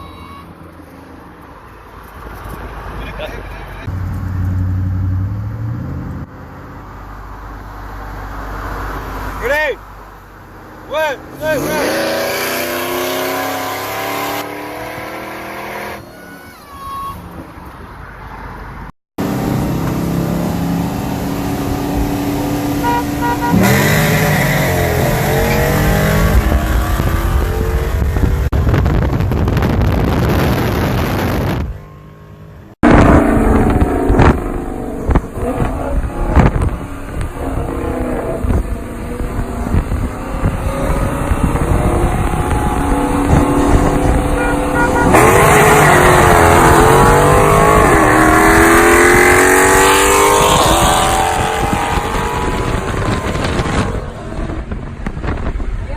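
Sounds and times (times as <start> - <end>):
engines at full throttle: 11.3 - 16.0, 19.2 - 31.9, 32.6 - 55.8.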